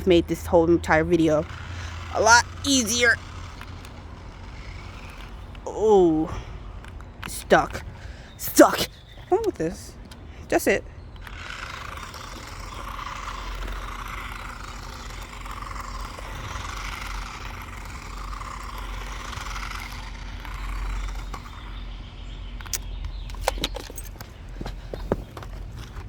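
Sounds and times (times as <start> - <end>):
toy car motor whirring: 0.0 - 26.0
sharp clicks: 22.6 - 24.4.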